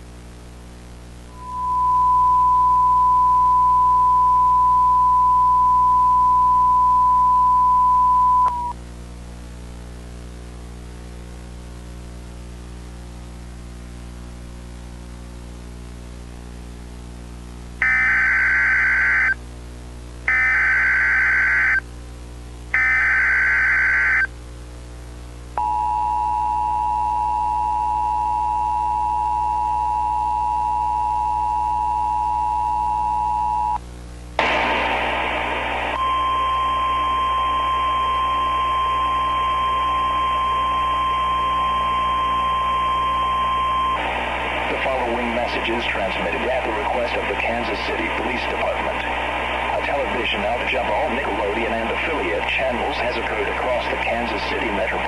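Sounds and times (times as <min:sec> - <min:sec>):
low electrical drone: 0:00.0 - 0:18.0, 0:33.8 - 0:55.0
high test tone: 0:01.3 - 0:08.7
two-tone attention signal: 0:01.3 - 0:08.7.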